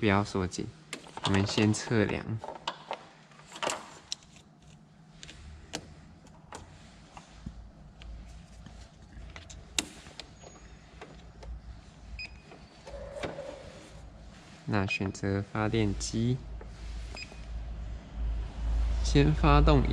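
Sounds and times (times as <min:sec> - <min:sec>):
faint clicks and handling noise: 0:00.9 - 0:13.4.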